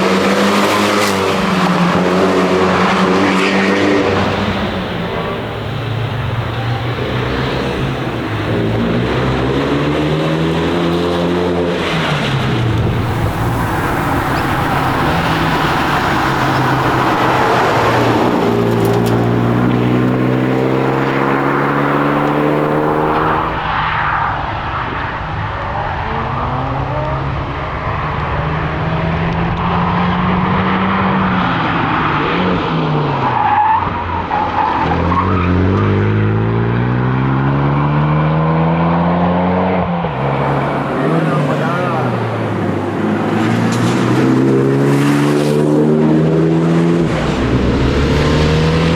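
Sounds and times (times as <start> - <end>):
car engine revving hard: 0.0 - 23.9, 34.8 - 48.9
road noise: 0.0 - 48.9.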